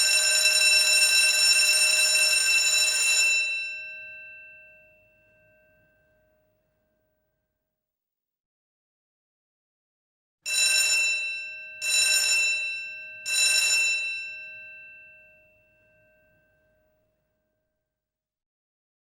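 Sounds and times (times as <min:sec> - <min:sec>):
school bell ringing: 0:00.0 - 0:06.0, 0:10.5 - 0:16.8.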